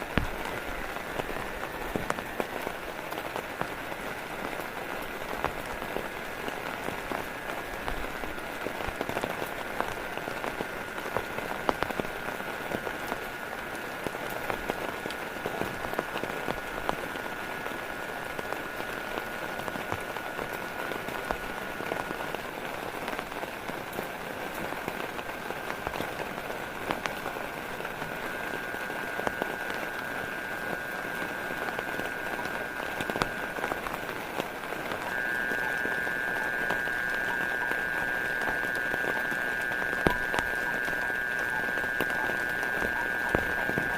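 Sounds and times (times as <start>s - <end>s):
rain drops pattering: 0.0s - 43.9s
faint high-pitched tone: 25.9s - 43.9s.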